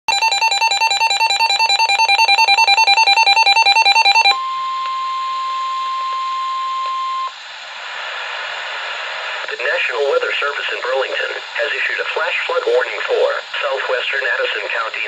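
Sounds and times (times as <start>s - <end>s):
steady warning alert tone: 0.1s - 4.5s
two-pitch warbling alarm: 0.1s - 7.3s
radio hiss: 7.3s - 15.0s.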